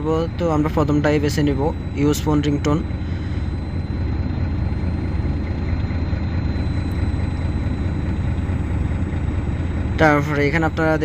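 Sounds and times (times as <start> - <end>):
faint high whine: 0.0 - 11.0
machine low rumble: 0.0 - 11.0.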